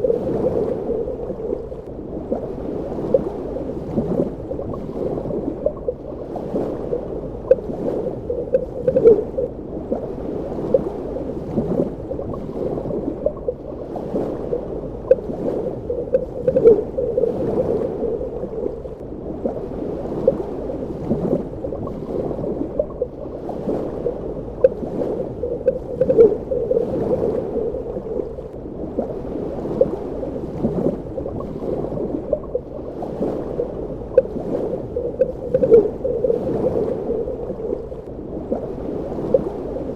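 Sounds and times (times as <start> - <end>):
muffled underwater rush: 0.0 - 39.9
bubbling pops and gurgles: 6.8 - 9.5, 14.4 - 19.0, 21.1 - 23.2, 24.5 - 28.4, 34.1 - 37.9.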